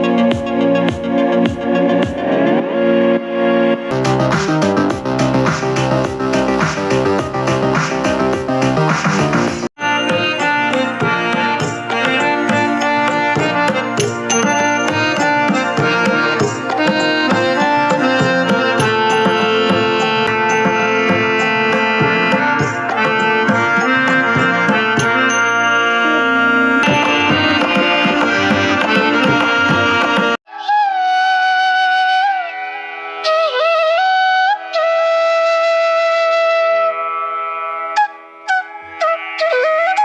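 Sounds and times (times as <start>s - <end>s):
instrumental music with drums: 0.0s - 2.4s, 3.9s - 25.9s, 26.8s - 30.4s.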